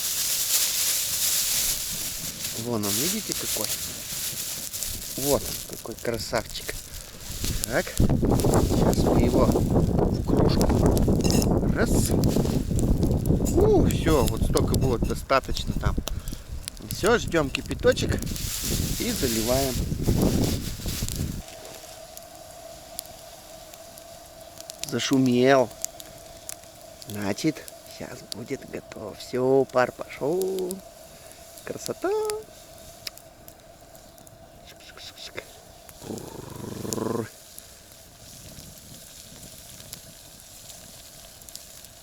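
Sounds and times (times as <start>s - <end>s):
campfire crackling: 0.0s - 42.0s
pot of water humming near boil: 19.6s - 42.0s.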